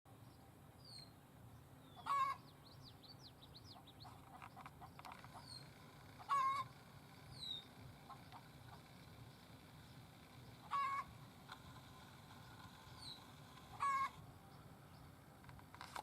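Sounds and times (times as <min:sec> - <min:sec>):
loud short bird calls: 0:01.9 - 0:02.6, 0:03.7 - 0:08.9, 0:10.4 - 0:11.2, 0:12.3 - 0:14.2.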